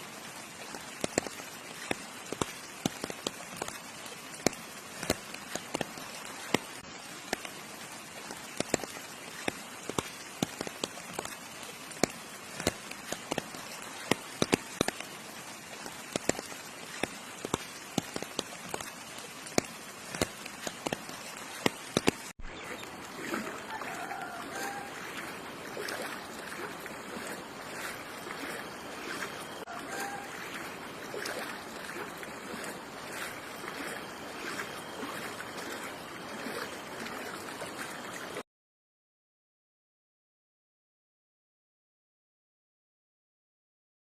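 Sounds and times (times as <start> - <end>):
rain hissing: 0.0 - 36.6
big raindrops striking a surface: 0.6 - 22.4.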